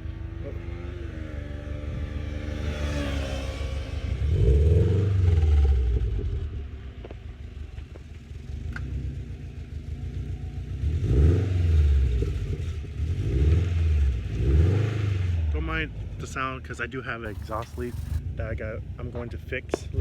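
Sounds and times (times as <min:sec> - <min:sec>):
car engine revving: 0:17.2 - 0:18.4.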